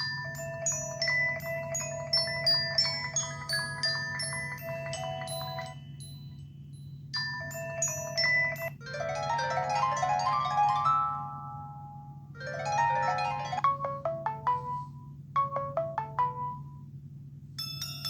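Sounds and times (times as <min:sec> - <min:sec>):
synthesized mallet ringtone melody: 0:00.0 - 0:06.4, 0:12.9 - 0:16.7.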